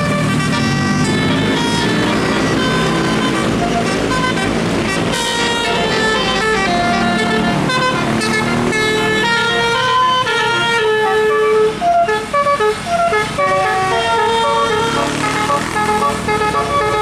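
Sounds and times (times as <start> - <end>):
bus rumbling: 0.0 - 17.0
musical air horn playing a tune: 0.0 - 17.0.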